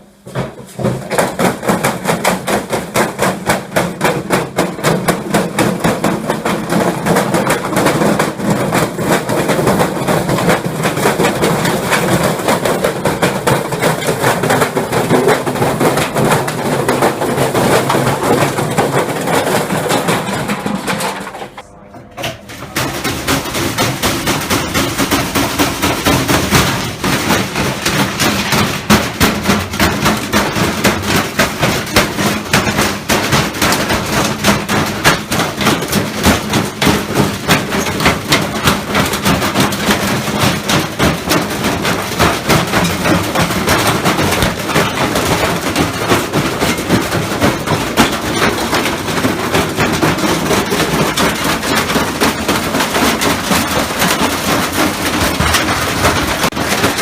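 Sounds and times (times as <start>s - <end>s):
hard objects banging in drum: 0.0s - 57.0s
washing machine running: 0.0s - 57.0s.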